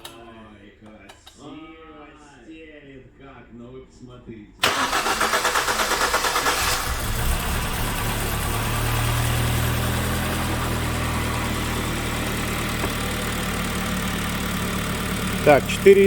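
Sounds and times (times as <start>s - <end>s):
car engine cranking and idling: 4.6s - 16.0s.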